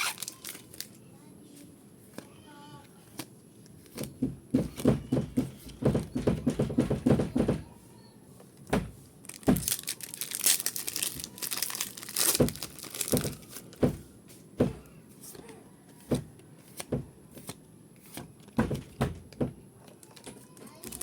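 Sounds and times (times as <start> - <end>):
wrapper crinkling and tearing: 0.0 - 1.0, 9.2 - 13.8, 20.0 - 21.0
cards and packaging thumping: 3.1 - 7.6, 8.6 - 14.9, 16.0 - 21.0.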